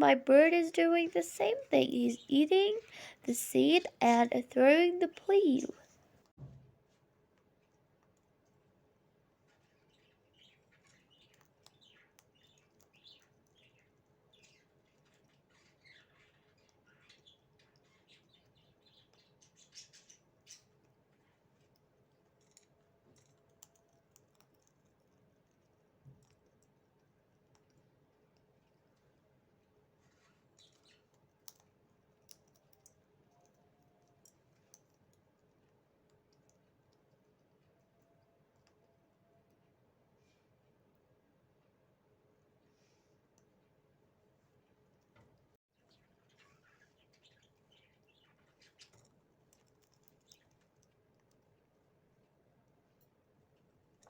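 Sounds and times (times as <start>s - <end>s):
bird chirping: 0.0s - 5.7s, 9.5s - 21.4s, 30.0s - 31.2s, 45.8s - 49.1s, 50.0s - 50.7s.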